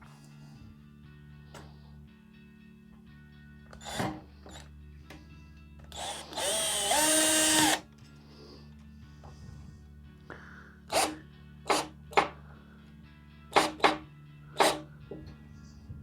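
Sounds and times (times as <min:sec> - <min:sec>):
background music: 0:00.0 - 0:16.0
power drill driving a screw: 0:03.8 - 0:04.6, 0:05.9 - 0:07.8, 0:10.9 - 0:11.9.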